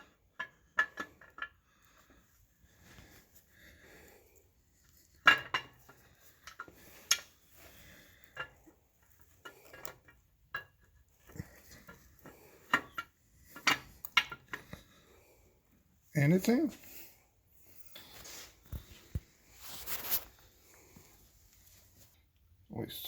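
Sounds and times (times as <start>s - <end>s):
metallic clinks and knocks: 4.9s - 15.0s.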